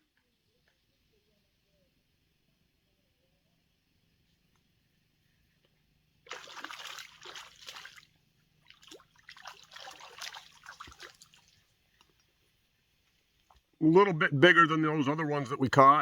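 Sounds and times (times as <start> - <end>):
fish thrashing water splashing: 6.3 - 11.6.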